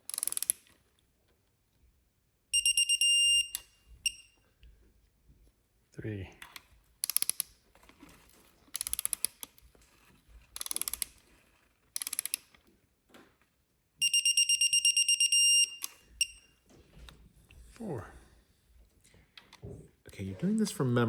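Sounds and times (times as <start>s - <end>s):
ratcheting torque wrench clicking: 0.0s - 0.8s, 6.4s - 7.6s, 8.7s - 9.6s, 10.6s - 11.2s, 12.0s - 12.6s
digital torque wrench beeping: 2.6s - 4.3s, 14.0s - 16.5s.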